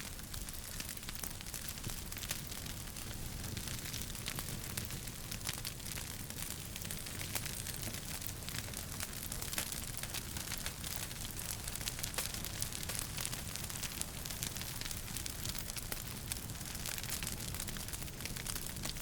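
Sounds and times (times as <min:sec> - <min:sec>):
wood fire crackling: 0:00.0 - 0:19.0.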